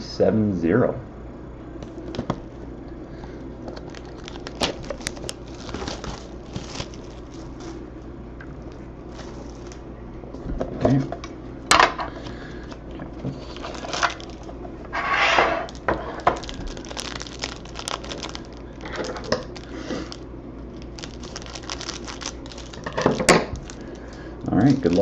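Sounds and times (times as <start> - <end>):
plastic wrapping crinkling and tearing: 3.6 - 8.0, 8.6 - 9.8, 13.4 - 14.6, 15.6 - 25.0.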